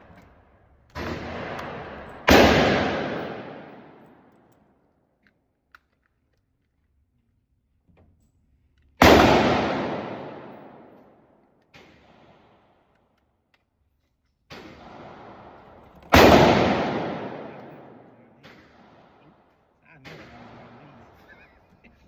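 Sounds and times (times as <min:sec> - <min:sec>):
faint gunshots: 0:01.0 - 0:04.3, 0:09.0 - 0:10.9, 0:14.5 - 0:19.4, 0:20.0 - 0:21.3
loud gunshots with echo: 0:01.0 - 0:04.3, 0:09.0 - 0:11.0, 0:14.5 - 0:19.2, 0:20.0 - 0:21.2.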